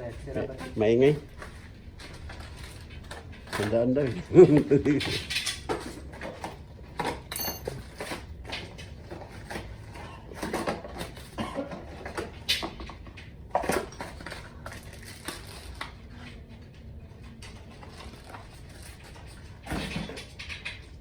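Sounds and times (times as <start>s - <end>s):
metal tools clinking: 7.3s - 8.1s.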